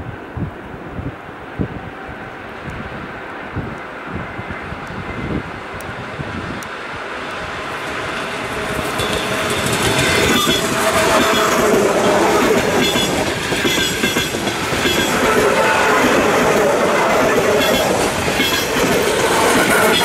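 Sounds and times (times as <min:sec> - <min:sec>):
train whine: 0:00.0 - 0:20.0
train wheels clattering: 0:07.6 - 0:20.0.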